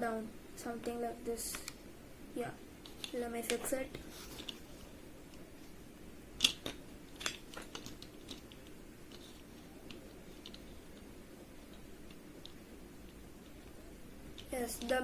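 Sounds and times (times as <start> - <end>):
sharp plastic snap: 6.4 - 8.0.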